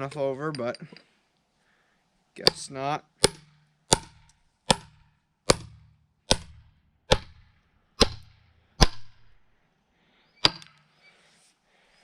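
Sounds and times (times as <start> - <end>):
sledge striking metal blade: 2.5 - 9.3.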